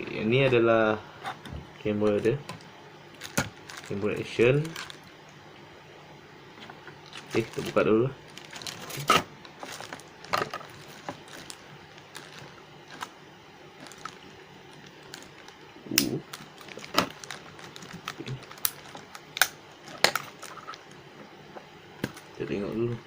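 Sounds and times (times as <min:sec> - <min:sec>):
packaging clicks and knocks: 0:03.2 - 0:03.9
packaging snapping: 0:03.2 - 0:05.1, 0:07.0 - 0:13.2, 0:13.8 - 0:21.0.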